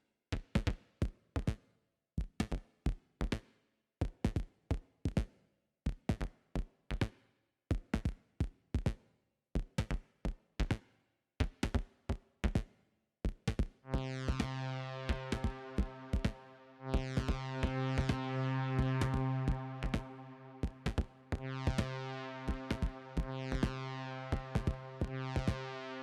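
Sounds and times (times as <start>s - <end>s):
sustained synth tone: 14.0s - 26.0s.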